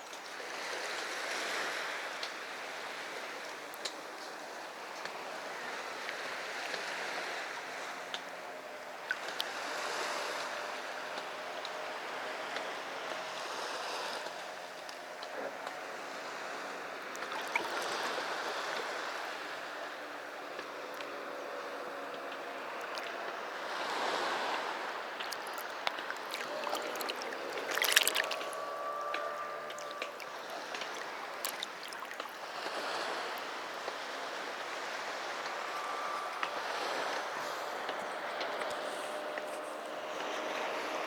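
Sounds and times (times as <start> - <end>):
sea waves washing on beach: 0.0 - 38.6
sharp wave splash: 24.6 - 28.7.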